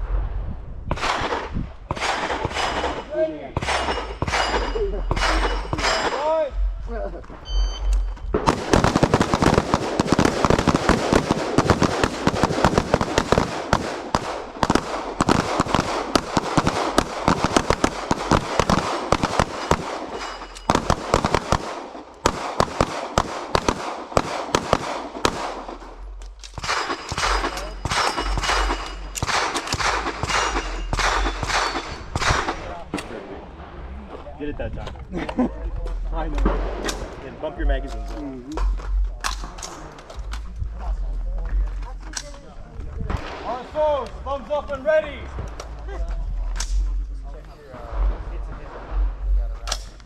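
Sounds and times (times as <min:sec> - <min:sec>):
rapid rifle and pistol gunfire: 0:00.9 - 0:06.4, 0:08.4 - 0:33.2.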